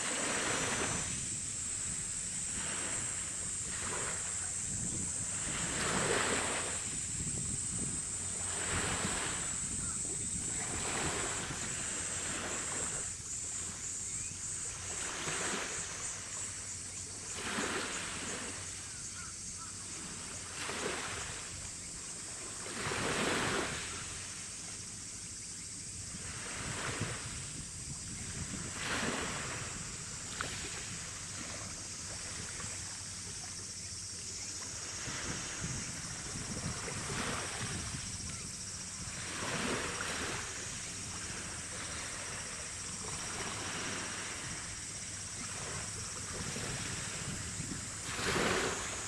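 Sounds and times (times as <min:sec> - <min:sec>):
steady high-pitched hiss: 0:00.0 - 0:49.0
wind: 0:00.0 - 0:49.0.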